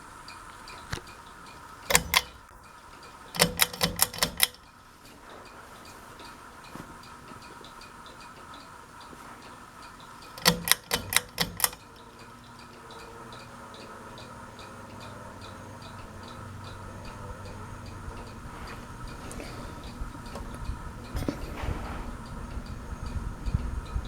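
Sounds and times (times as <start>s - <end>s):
ceiling fan motor hum with ticking: 0.0s - 24.0s
sharp clicks: 0.5s - 2.7s, 3.3s - 4.7s, 9.9s - 23.7s.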